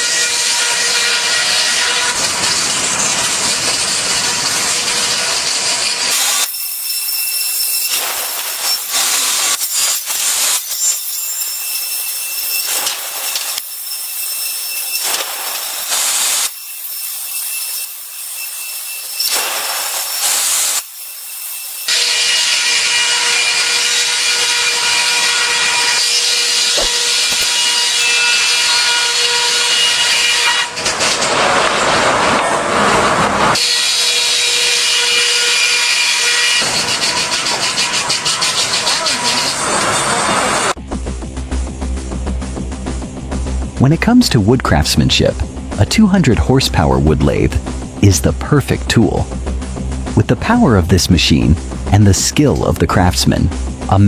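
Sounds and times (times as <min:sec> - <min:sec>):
power saw cutting wood: 0:00.0 - 0:40.8.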